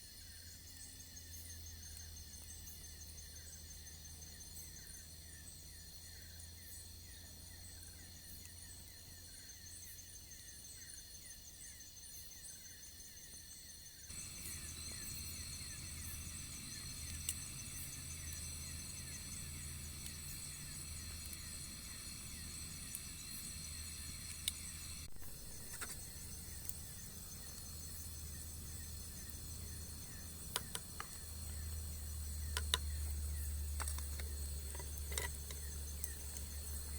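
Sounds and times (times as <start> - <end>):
insects chirping and trilling: 0.0 - 36.9
sharp clicks: 30.4 - 31.6.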